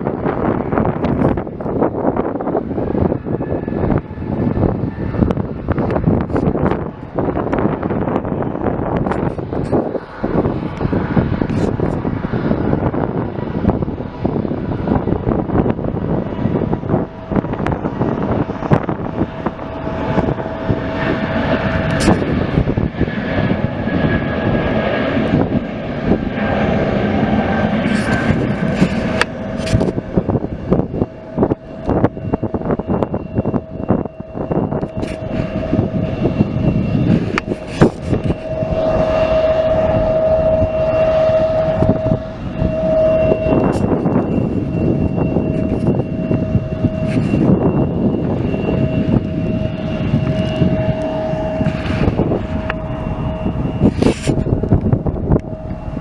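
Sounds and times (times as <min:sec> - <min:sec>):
jet engines rushing and whining: 0:00.0 - 0:56.0.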